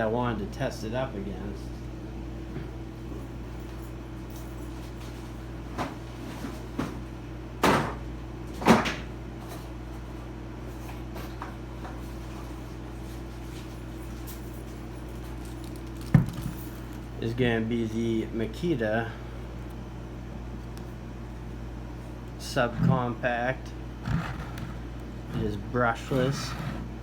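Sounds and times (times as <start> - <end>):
steady low hum: 0.0 - 27.0
objects knocking when set down: 16.0 - 16.6.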